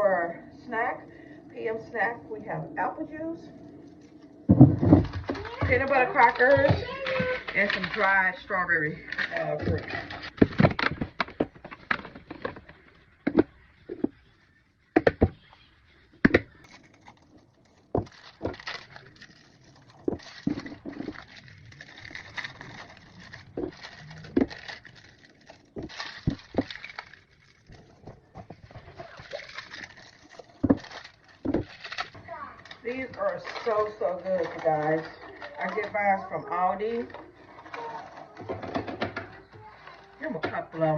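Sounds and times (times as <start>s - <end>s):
items knocking on table: 4.5s - 8.0s, 9.6s - 14.2s, 15.0s - 15.4s, 38.4s - 39.4s
young children babbling: 6.8s - 7.5s.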